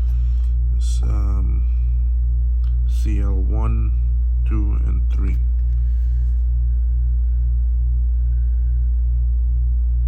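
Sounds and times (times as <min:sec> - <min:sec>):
air conditioner humming: 0:00.0 - 0:10.0.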